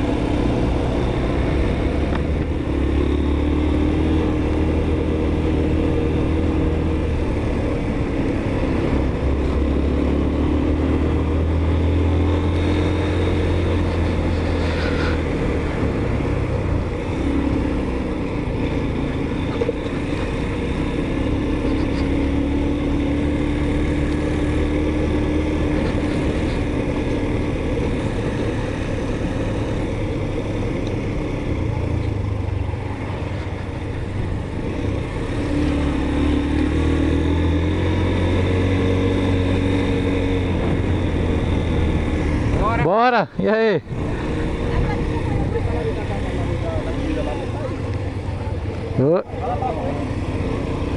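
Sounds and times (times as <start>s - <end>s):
motorcycle engine rumbling: 0.0s - 50.9s.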